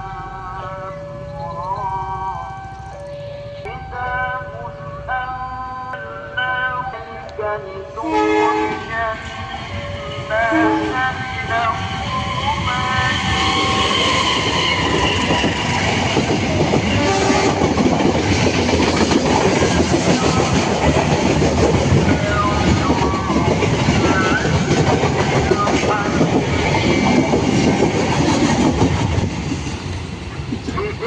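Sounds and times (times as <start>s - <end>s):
train wheels clattering over rails: 13.4s - 31.0s.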